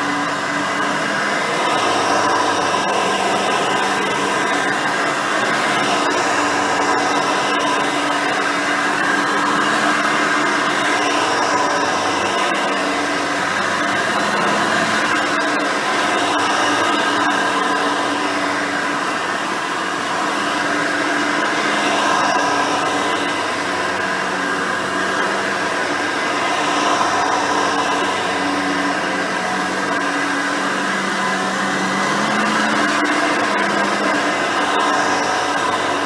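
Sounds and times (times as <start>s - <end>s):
upright vacuum cleaner running: 0.0s - 36.0s.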